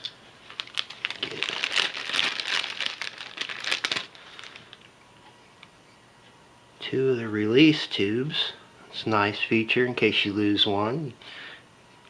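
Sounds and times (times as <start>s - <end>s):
crinkly packaging rustling: 0.4s - 4.9s.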